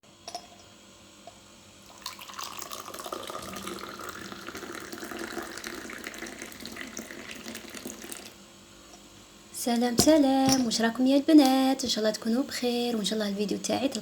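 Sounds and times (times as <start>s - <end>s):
water running from a tap: 1.9s - 8.4s.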